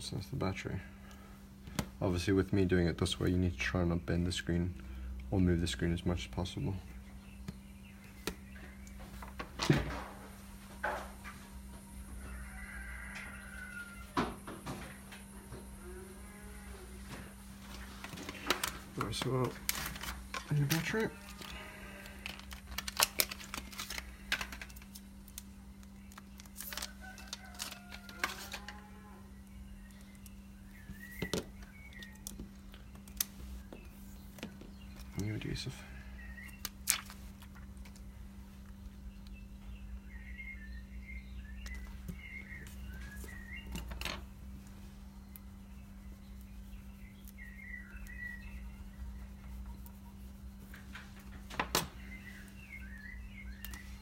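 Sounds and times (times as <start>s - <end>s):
steady low hum: 0.0s - 54.0s
faint bird calls: 27.0s - 36.9s, 44.7s - 54.0s.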